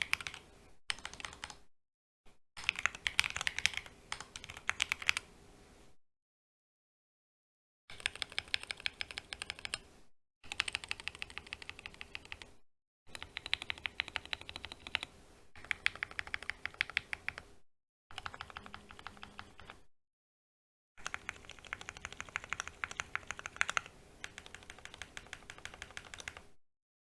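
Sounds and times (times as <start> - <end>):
fast typing on mechanical keyboard: 0.0 - 1.6, 2.6 - 5.3, 8.0 - 9.8, 10.5 - 12.5, 13.1 - 17.4, 18.2 - 19.4, 21.0 - 26.6.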